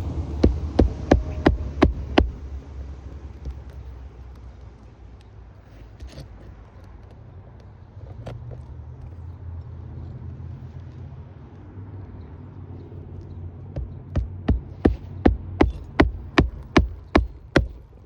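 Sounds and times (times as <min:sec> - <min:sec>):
sharp knocks: 0:00.0 - 0:02.5, 0:13.8 - 0:18.0
low outdoor rumble: 0:00.0 - 0:18.0.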